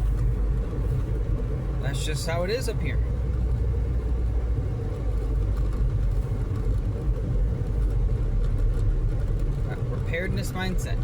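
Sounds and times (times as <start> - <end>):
car interior engine and tyre rumble: 0.0 - 11.0.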